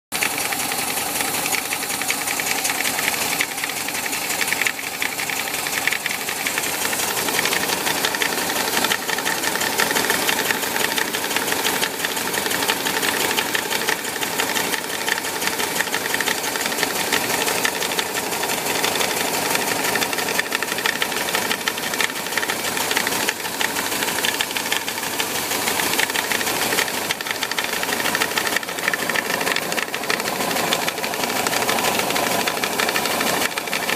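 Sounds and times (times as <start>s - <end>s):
air-cooled engine running: 0.1s - 33.9s
rapid knocking from cooling fan: 0.2s - 33.9s.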